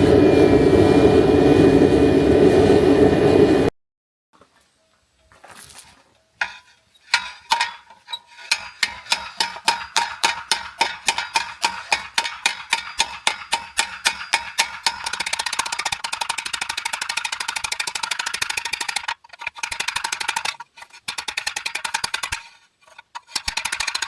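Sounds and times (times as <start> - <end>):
hammer striking steel on anvil: 6.4 - 16.0.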